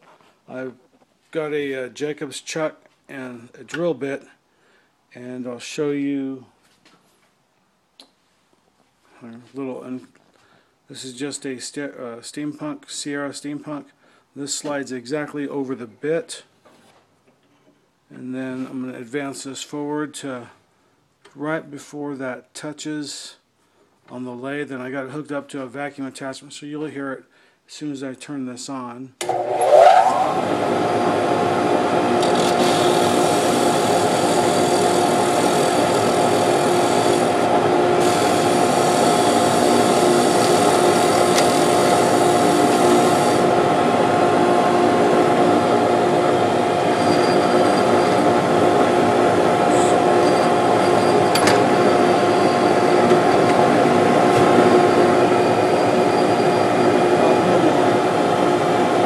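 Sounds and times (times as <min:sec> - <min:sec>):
lathe turning: 0:29.2 - 0:30.8, 0:32.1 - 0:44.2, 0:45.0 - 0:57.7
vacuum running hum and hiss: 0:29.2 - 0:59.0
drill bit scraping hiss: 0:32.2 - 0:37.4, 0:38.0 - 0:43.5, 0:46.9 - 0:48.4, 0:49.7 - 0:53.5.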